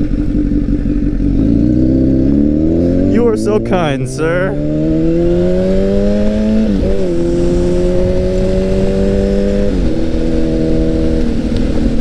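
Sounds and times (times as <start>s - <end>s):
motorcycle engine revving and shifting: 0.0s - 12.0s.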